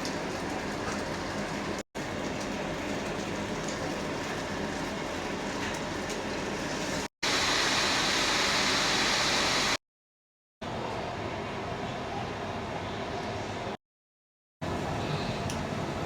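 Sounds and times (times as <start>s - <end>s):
food sizzling in a wok: 5.4s - 9.8s.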